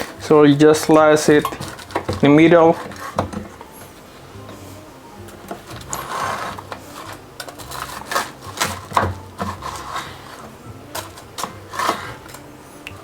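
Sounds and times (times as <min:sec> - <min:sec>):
knife sawing through crispy toast: 0:05.8 - 0:12.4.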